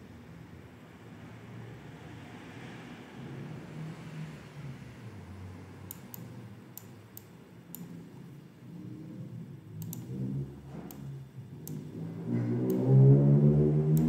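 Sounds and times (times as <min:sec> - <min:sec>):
sharp clicks: 0:09.8 - 0:10.1.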